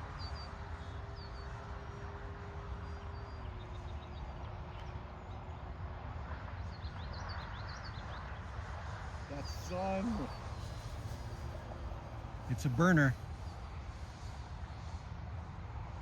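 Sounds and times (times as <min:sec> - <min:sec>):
birds chirping: 0:09.1 - 0:13.6.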